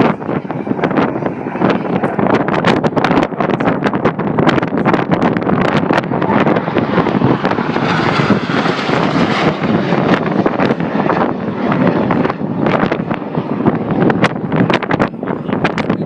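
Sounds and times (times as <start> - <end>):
aircraft flying past: 0.0 - 16.0
wind buffeting microphone: 0.0 - 16.0.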